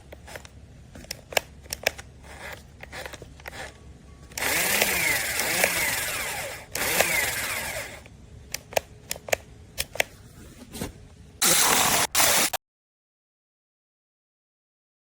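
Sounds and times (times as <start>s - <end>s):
electric chainsaw whirring: 4.3s - 8.1s, 11.4s - 12.6s.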